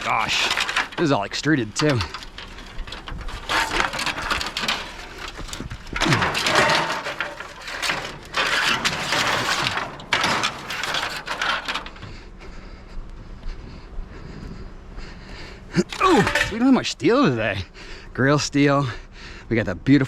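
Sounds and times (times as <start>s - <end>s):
scrap metal clattering: 0.0s - 12.3s, 15.8s - 17.0s.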